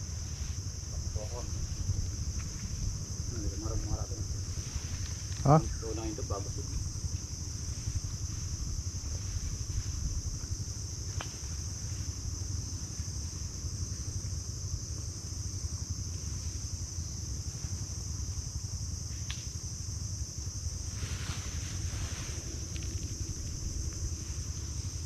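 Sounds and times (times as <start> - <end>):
insects chorus: 0.0 - 25.0
low rumble: 1.0 - 5.0.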